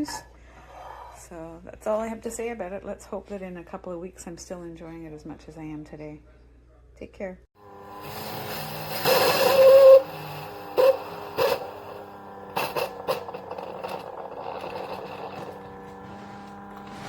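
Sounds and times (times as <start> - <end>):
coffee maker pump humming: 7.6 - 17.0
coffee maker spitting: 7.6 - 17.0.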